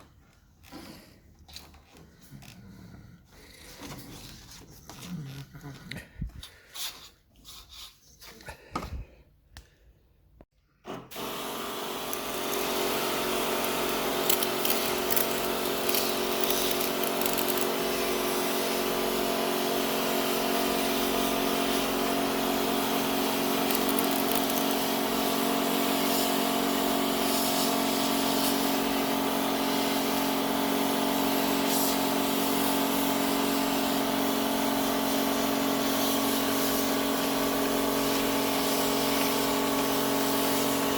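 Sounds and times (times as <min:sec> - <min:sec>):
electric motor machine humming: 0:11.2 - 0:20.3, 0:21.8 - 0:25.8
hiss: 0:12.1 - 0:30.4, 0:31.1 - 0:40.9.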